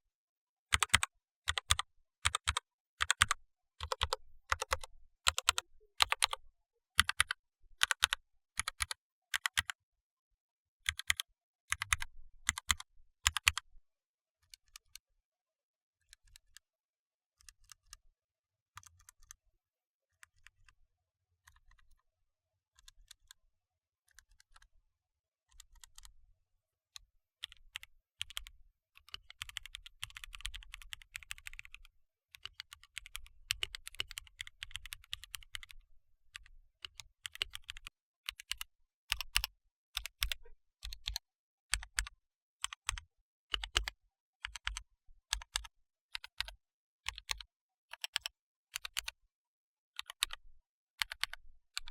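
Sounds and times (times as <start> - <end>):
fast typing on keyboard: 0.7 - 6.4, 7.0 - 9.7, 10.9 - 13.6, 29.2 - 31.8, 32.4 - 35.7, 37.0 - 43.0, 43.6 - 47.4
mechanical keyboard key clicks: 0.8 - 6.4.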